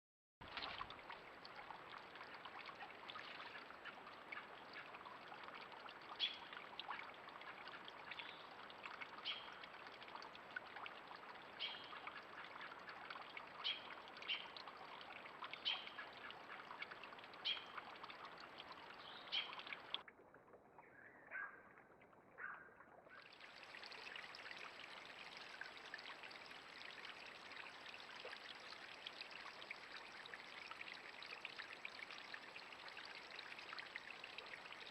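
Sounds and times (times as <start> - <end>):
trickle of running water: 0.4 - 34.9.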